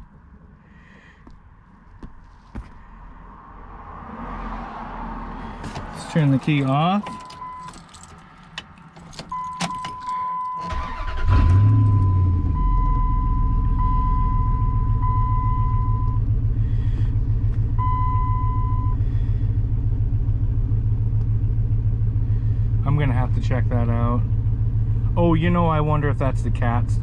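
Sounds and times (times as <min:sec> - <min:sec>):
engine cranking and idling: 0:05.6 - 0:26.9
keys jangling in ignition: 0:06.4 - 0:12.0.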